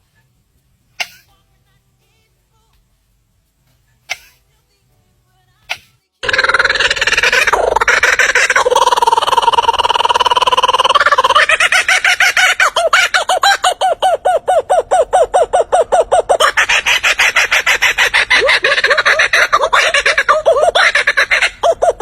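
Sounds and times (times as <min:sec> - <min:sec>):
lyrebird calling: 0:05.7 - 0:22.0.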